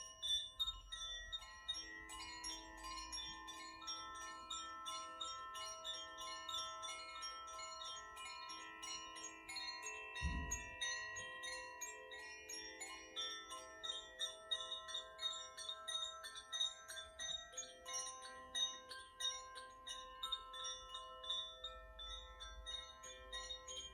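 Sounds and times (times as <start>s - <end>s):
wind chimes ringing: 0.0s - 23.9s
low thump: 10.2s - 10.8s.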